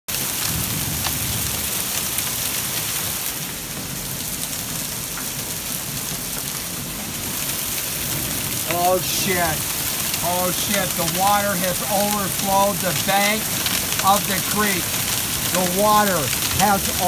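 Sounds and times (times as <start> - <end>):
heavy rain: 0.1 - 17.0
creek rushing: 4.9 - 17.0
drops ticking: 8.1 - 17.0.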